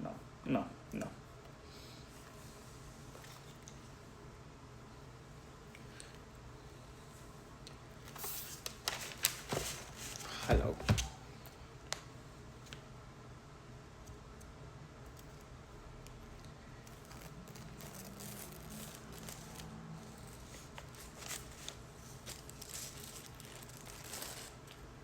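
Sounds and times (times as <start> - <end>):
packaging crinkling and tearing: 8.0 - 10.4, 16.0 - 24.9.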